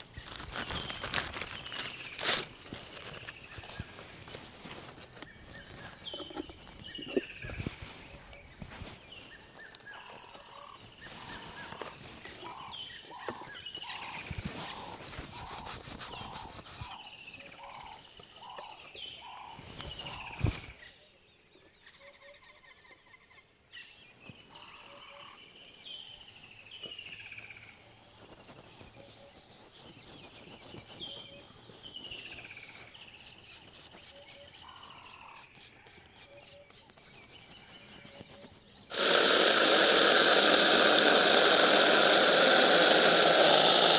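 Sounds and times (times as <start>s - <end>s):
bird call sliding downward: 38.9s - 43.9s.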